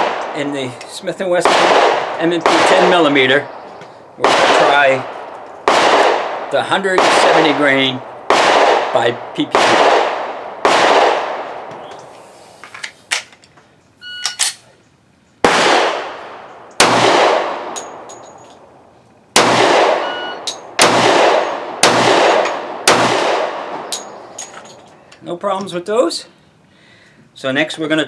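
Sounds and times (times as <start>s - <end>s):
pistol shots echoing: 1.4s - 3.5s, 4.2s - 11.7s, 15.4s - 18.3s, 19.3s - 24.4s
light metallic clinks: 17.8s - 18.6s, 23.9s - 25.0s.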